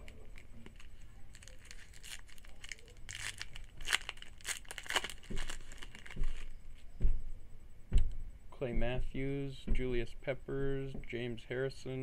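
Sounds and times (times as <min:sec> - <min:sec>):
card pack wrapper tearing: 0:00.0 - 0:06.5
wrapper crinkling: 0:00.0 - 0:06.6
soft thuds: 0:05.1 - 0:11.2.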